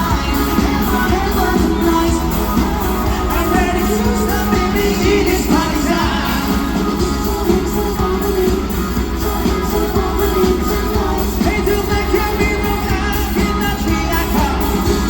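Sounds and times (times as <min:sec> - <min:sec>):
lead singer singing: 0:00.0 - 0:15.0
live rock band playing: 0:00.0 - 0:15.0.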